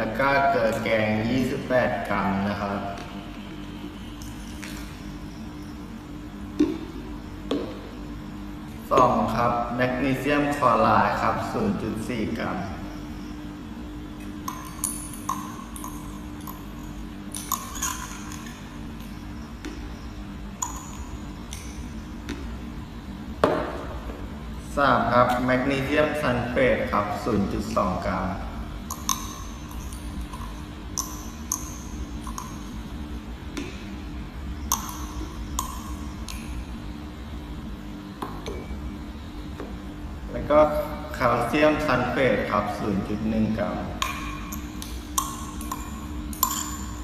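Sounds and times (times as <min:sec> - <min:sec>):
faint low hum: 0:00.0 - 0:47.0
utensil clinking glassware: 0:14.4 - 0:19.2, 0:28.9 - 0:32.8, 0:44.0 - 0:47.0.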